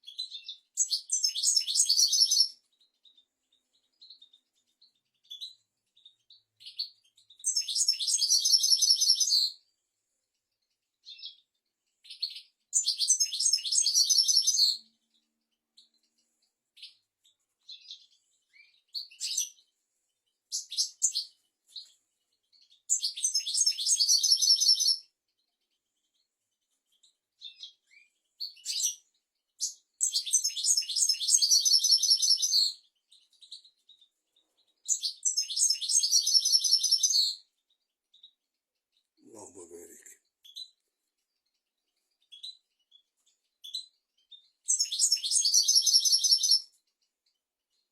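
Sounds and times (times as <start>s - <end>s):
bird twittering trills: 0.0s - 9.6s, 12.0s - 15.2s, 20.5s - 25.1s, 26.9s - 38.4s, 41.9s - 46.8s
short bird chirps: 11.0s - 19.7s, 42.0s - 46.8s.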